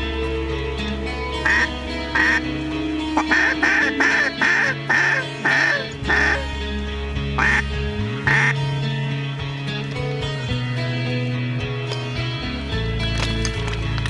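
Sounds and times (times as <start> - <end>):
background music: 0.0 - 14.0
duck quacking: 1.4 - 2.5, 3.2 - 6.5, 7.4 - 8.6.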